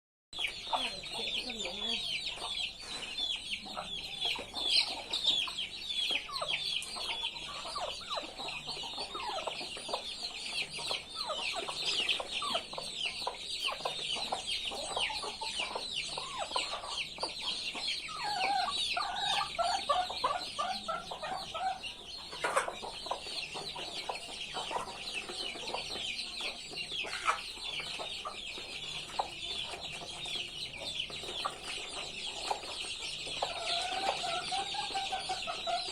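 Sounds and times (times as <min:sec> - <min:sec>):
chickens clucking: 0:00.4 - 0:35.9
chicks peeping: 0:00.4 - 0:35.9.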